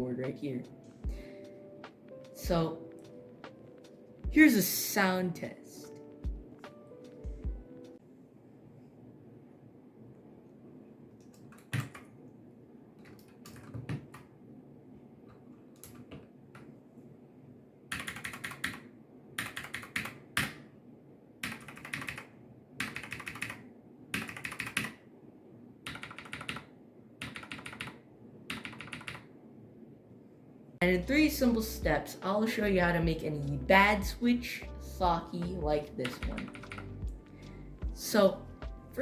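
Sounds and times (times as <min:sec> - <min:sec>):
mechanical keyboard typing: 0:11.2 - 0:12.1, 0:17.9 - 0:20.6, 0:21.4 - 0:25.0, 0:25.8 - 0:29.3, 0:36.0 - 0:37.0.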